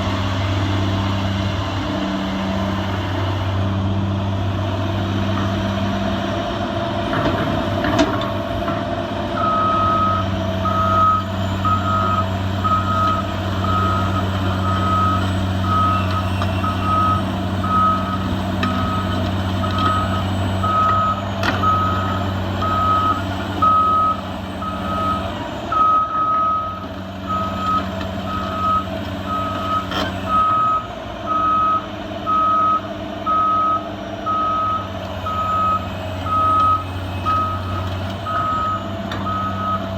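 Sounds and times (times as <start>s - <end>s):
diesel engine running: 0.0s - 39.9s
excavator travel alarm beeping: 9.4s - 39.9s.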